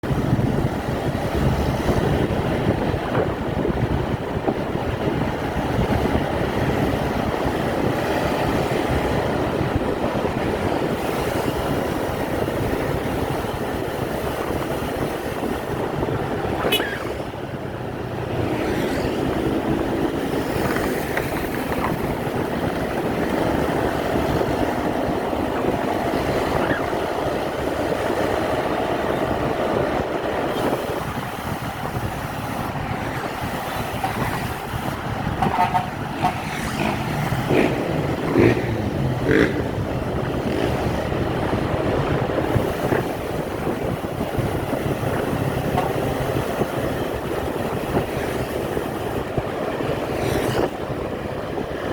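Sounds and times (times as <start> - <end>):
bus driving along road: 0.0 - 51.9
bus horn toots: 35.4 - 36.4.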